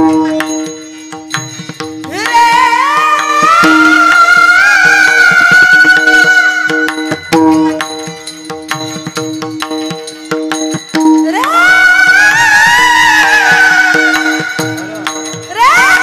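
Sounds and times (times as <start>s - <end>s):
held-tone accompaniment: 0.0s - 16.0s
person singing high notes: 2.1s - 7.8s.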